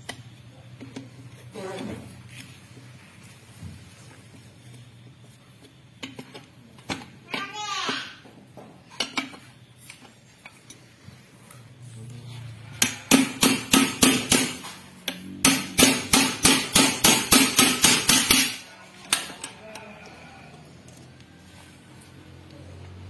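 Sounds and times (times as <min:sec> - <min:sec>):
hammer striking metal: 0:12.8 - 0:19.6.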